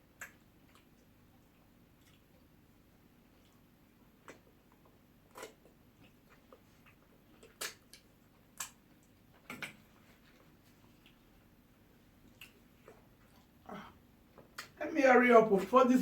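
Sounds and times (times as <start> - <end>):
faint room hiss: 0.0 - 16.0
eating clicks and smacks: 0.1 - 2.5, 3.3 - 11.5, 12.2 - 13.6, 14.3 - 14.8.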